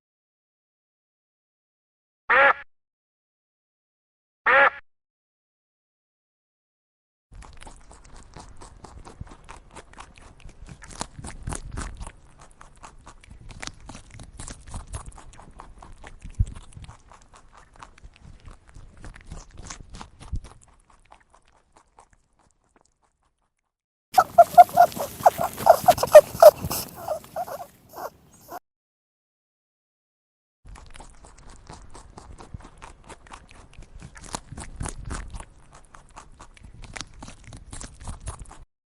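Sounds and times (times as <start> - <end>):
animal crunching and clicking: 7.4 - 23.6, 24.2 - 28.6, 30.7 - 38.6
loud animal call: 24.2 - 28.6.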